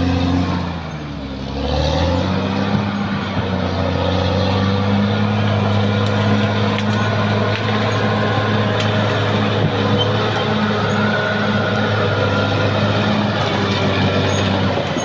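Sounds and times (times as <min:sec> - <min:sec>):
bulldozer diesel engine drone: 0:00.0 - 0:15.0.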